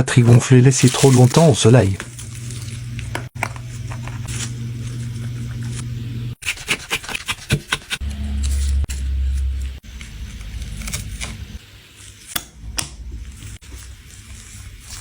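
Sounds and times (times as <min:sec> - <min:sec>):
steady low hum: 0:00.0 - 0:06.4, 0:08.0 - 0:11.7.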